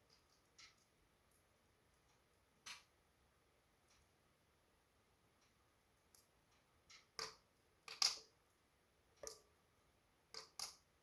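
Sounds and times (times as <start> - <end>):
sharp pops and snaps: 5.4 - 8.4, 10.3 - 10.9.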